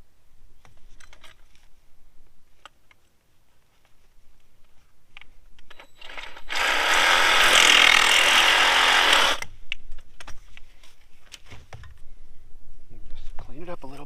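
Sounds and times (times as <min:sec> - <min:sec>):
power tool cutting pipe: 0:06.0 - 0:09.5.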